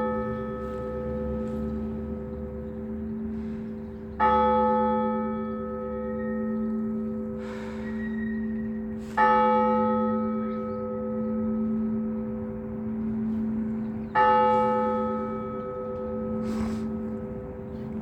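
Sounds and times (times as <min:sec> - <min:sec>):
church bell ringing: 0:00.0 - 0:18.0
low hum from bells: 0:00.0 - 0:18.0.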